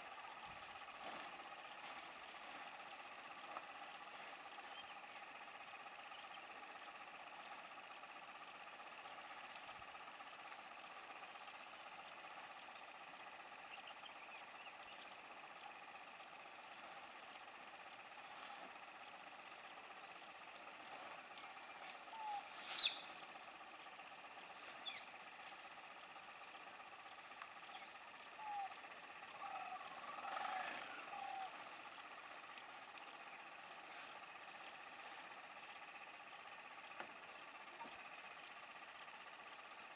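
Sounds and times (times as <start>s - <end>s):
pulsing high-pitched insect call: 0.0s - 39.9s
short bird chirps: 22.2s - 23.1s.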